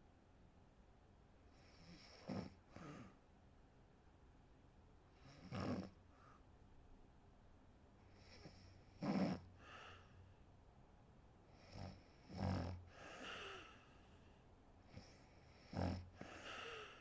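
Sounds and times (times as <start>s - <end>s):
breathy exhale: 12.9s - 14.4s, 16.2s - 17.0s
woman snoring: 15.6s - 17.0s.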